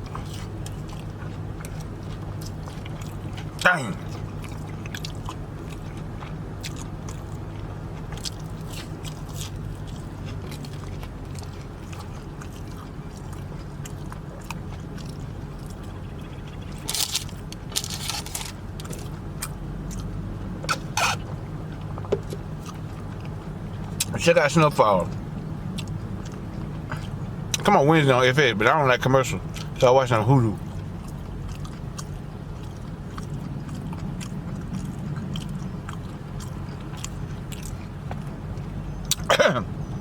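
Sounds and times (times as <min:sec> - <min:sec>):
crunchy bites: 0:00.0 - 0:20.1
close-up chewing and biting: 0:00.0 - 0:24.1, 0:25.1 - 0:27.7, 0:30.6 - 0:39.3
steady low hum: 0:00.0 - 0:40.0.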